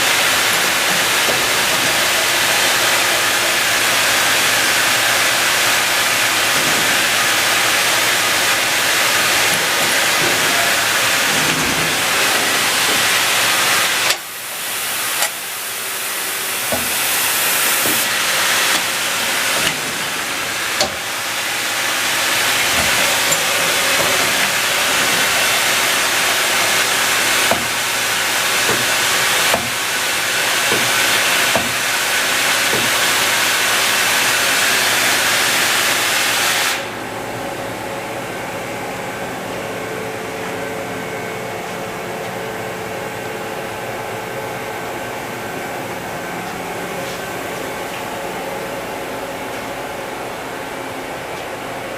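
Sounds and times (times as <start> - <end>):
machine loud hiss: 0.0 - 37.8
machine hum: 0.0 - 51.9.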